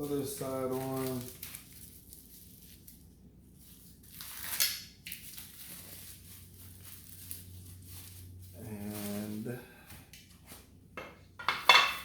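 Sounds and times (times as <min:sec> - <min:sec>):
packing material rustling: 0:00.0 - 0:09.6.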